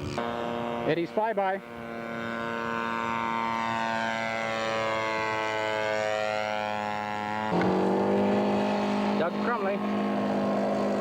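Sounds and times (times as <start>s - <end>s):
model airplane engine flyby: 0.0s - 11.0s.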